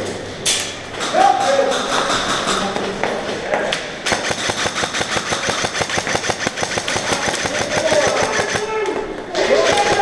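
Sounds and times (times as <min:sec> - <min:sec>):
airsoft gun firing full auto: 0:04.1 - 0:08.8, 0:09.6 - 0:10.0.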